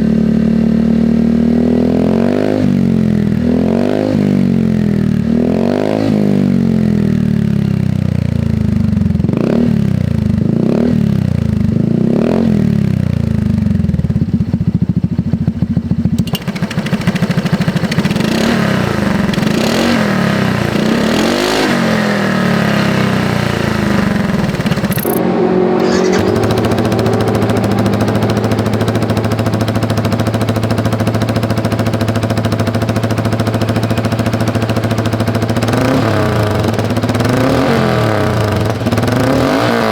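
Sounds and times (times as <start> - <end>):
motorcycle engine idling: 0.0 - 3.4, 12.8 - 25.2, 25.8 - 39.4
scooter engine revving: 0.0 - 39.9.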